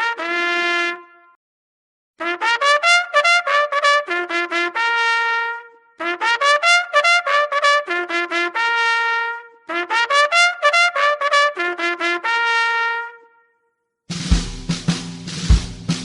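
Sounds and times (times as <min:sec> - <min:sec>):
solo trumpet fanfare: 0:00.0 - 0:01.4, 0:02.2 - 0:13.5.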